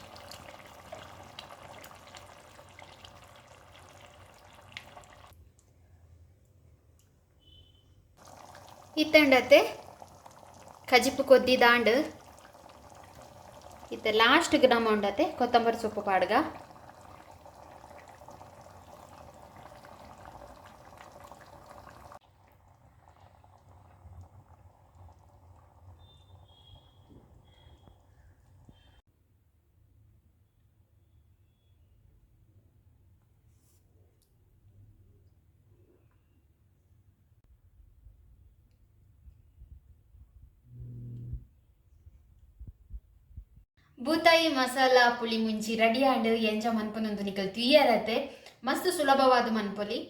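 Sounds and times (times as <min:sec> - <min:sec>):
gravy bubbling in a pan: 0:00.0 - 0:05.8, 0:08.2 - 0:29.0
faint low hum: 0:37.5 - 0:43.6.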